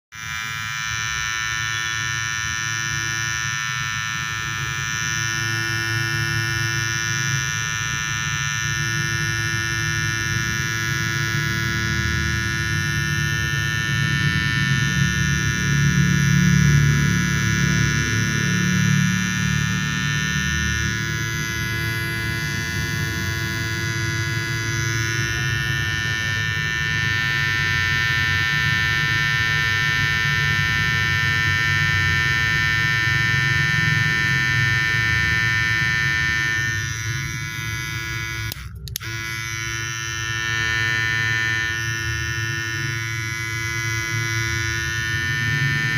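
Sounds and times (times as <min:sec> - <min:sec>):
electric hair trimmer buzzing: 0:00.1 - 0:45.9.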